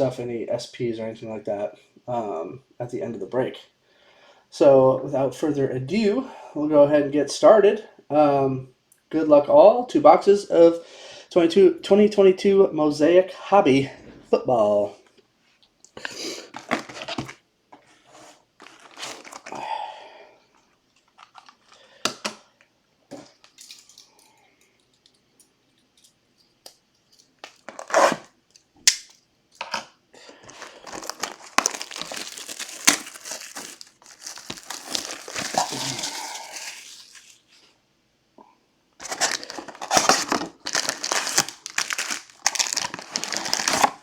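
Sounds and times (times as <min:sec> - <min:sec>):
plastic shrink-wrap crinkling: 0:18.6 - 0:19.6, 0:21.0 - 0:22.0, 0:27.4 - 0:28.3, 0:30.4 - 0:37.7, 0:39.0 - 0:44.0.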